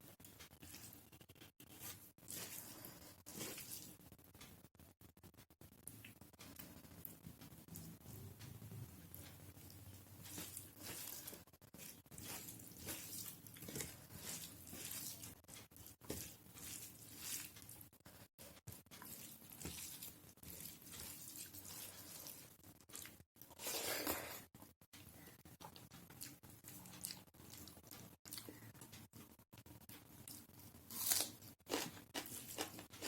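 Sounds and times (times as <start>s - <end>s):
wet chewing and mouth smacks: 25.6s - 29.3s.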